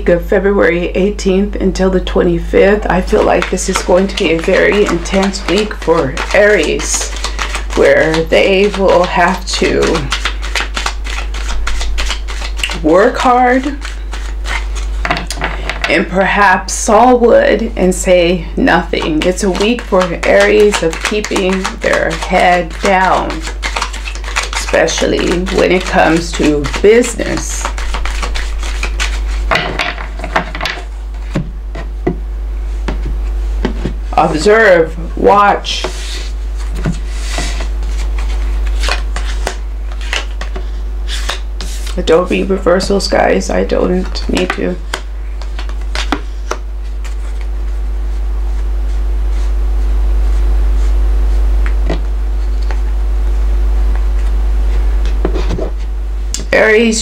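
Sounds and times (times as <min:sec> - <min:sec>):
steady low hum: 0:00.0 - 0:57.0
objects knocking on wooden table: 0:29.5 - 0:30.8.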